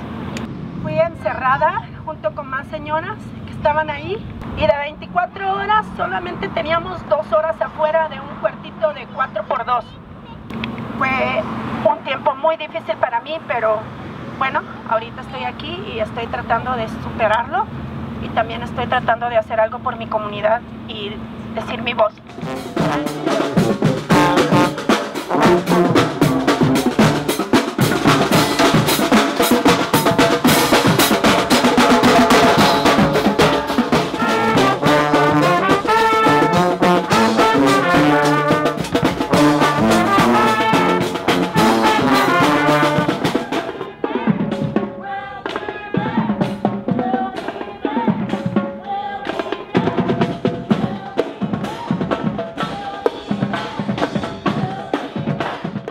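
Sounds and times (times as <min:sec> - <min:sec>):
horn melody: 0:21.6 - 0:51.0
marching band playing: 0:21.6 - 0:55.9
snare and bass drums: 0:22.2 - 0:44.9.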